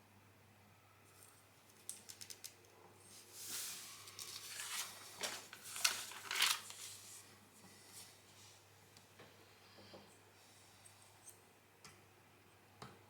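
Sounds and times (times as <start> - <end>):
pieces rustling and clattering: 4.1 - 6.8.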